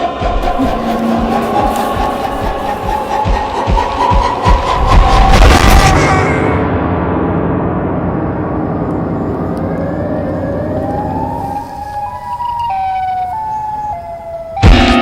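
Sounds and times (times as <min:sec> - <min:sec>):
siren-like wail: 0:00.4 - 0:03.3, 0:08.9 - 0:15.0.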